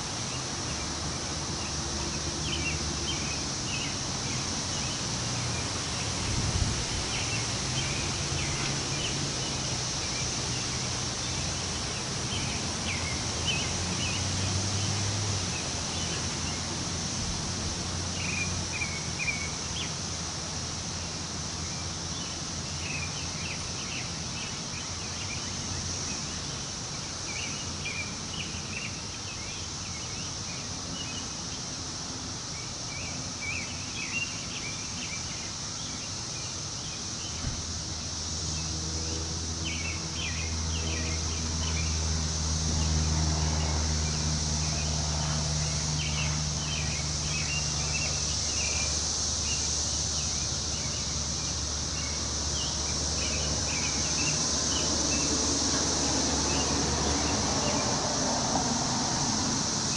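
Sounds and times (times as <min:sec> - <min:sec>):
wind in trees: 0:00.0 - 0:59.9
high-pitched insect drone: 0:32.6 - 0:59.9.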